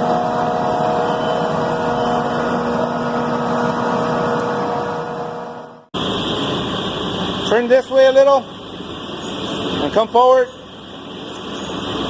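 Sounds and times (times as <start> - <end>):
machine running: 0.0 - 12.0.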